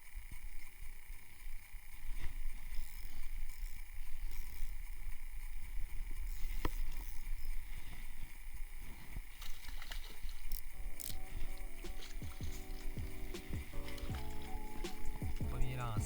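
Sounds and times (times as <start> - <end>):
faint steady high tone: 10.5 - 16.0.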